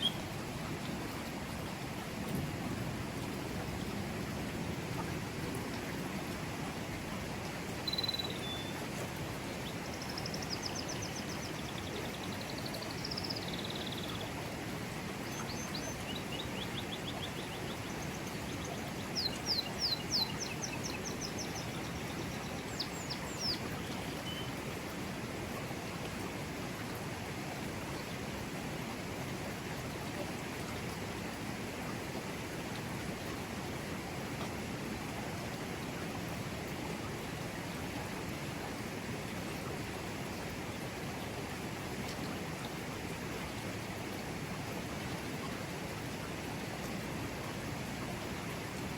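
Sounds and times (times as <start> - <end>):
birds calling and singing: 0.0 - 0.3, 7.8 - 8.8, 15.3 - 24.5
river flowing: 0.0 - 48.9.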